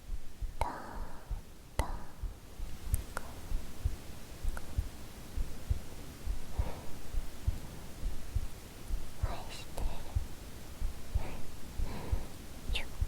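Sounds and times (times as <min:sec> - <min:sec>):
human heartbeat thumps: 0:00.0 - 0:13.0
faint clicks: 0:03.9 - 0:04.8.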